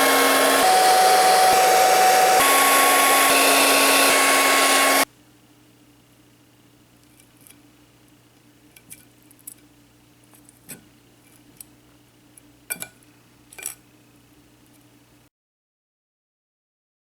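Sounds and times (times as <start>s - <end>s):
faint steady hum: 5.0s - 15.3s
utensil clinking on dishes: 12.7s - 13.0s.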